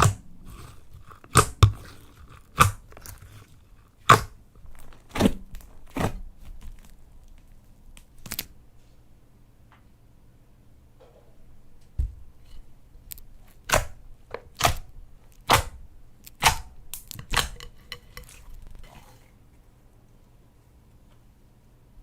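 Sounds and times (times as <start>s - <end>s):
slime crackling: 0.0s - 8.6s.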